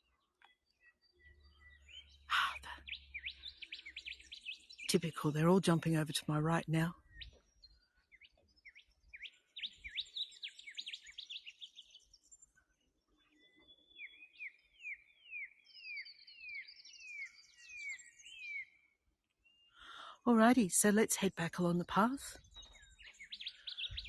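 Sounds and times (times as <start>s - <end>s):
birds chirping: 0.0s - 24.0s
high bird twittering: 1.5s - 5.4s, 7.0s - 12.0s, 22.4s - 24.0s.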